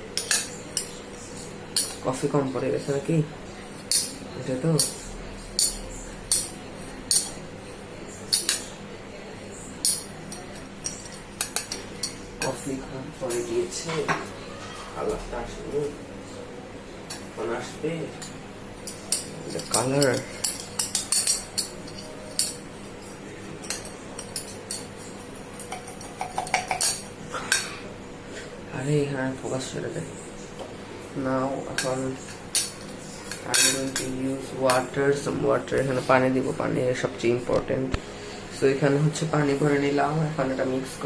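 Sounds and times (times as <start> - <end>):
metal spoon clinking against glass: 18.2 - 22.6, 23.6 - 27.1
spoon clinking against glass: 23.6 - 27.1.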